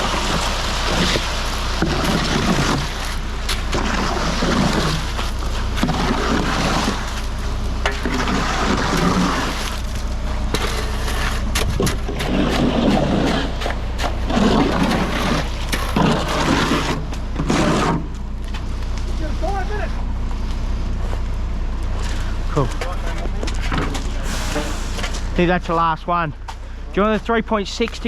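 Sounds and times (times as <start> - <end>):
rushing watery noise: 0.0 - 10.0, 11.8 - 17.0
truck engine running: 0.0 - 28.0.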